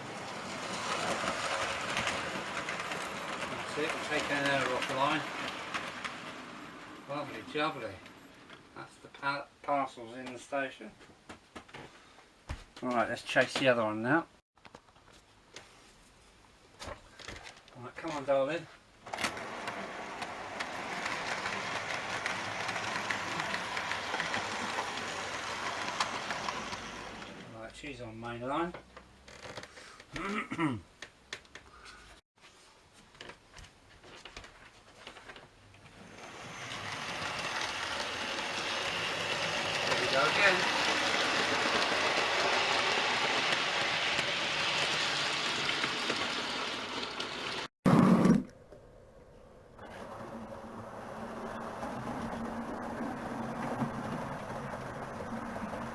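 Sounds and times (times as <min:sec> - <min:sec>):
model train rolling rumble: 0:00.0 - 0:08.6, 0:19.3 - 0:27.5, 0:36.0 - 0:48.2, 0:49.8 - 0:55.9
wheels clicking over rail joints: 0:00.0 - 0:08.7, 0:19.1 - 0:27.6, 0:35.2 - 0:48.2, 0:49.8 - 0:55.9.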